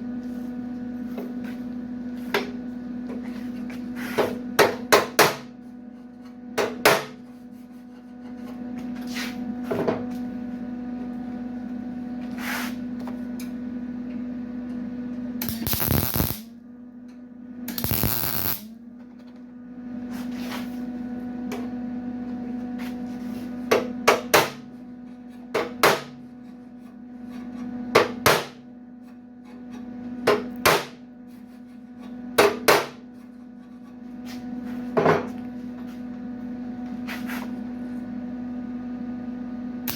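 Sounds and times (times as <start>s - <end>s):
steady hum: 0.0s - 39.9s
tack welding crackle: 15.4s - 16.5s, 17.7s - 18.7s.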